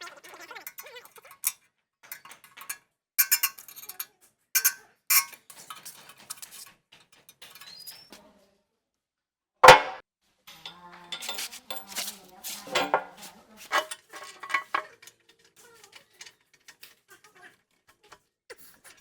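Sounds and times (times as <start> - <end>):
metallic clinks of small parts: 0.6 - 8.1, 10.7 - 15.1.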